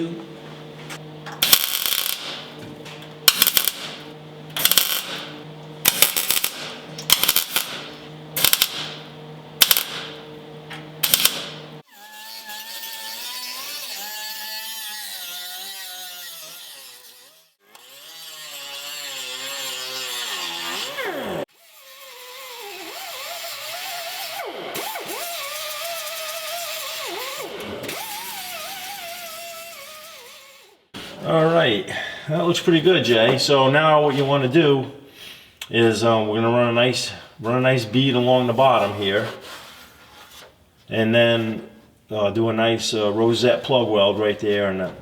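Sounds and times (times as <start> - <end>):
steady welder hum: 0.0 - 31.8
welder tack weld bursts: 1.0 - 11.9.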